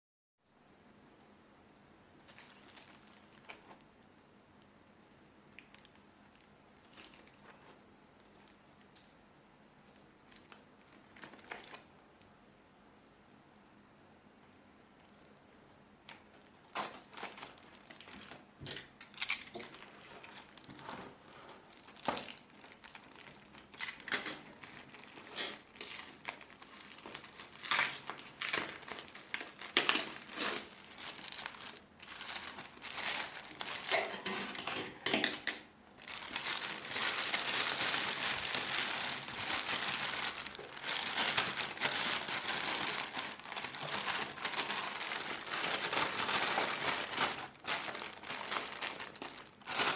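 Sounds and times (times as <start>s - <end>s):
plastic wrapping crinkling: 2.2s - 4.0s, 5.6s - 7.8s, 10.3s - 11.9s, 16.0s - 49.9s.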